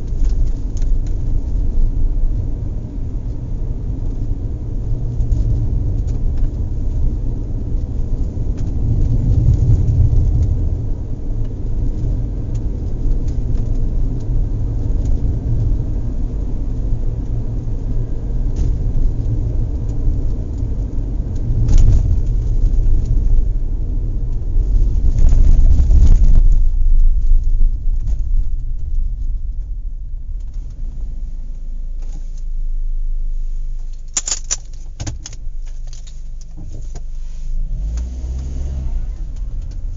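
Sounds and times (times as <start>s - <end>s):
car road rumble: 0.0s - 39.9s
knocks and rattles in car: 34.2s - 37.1s.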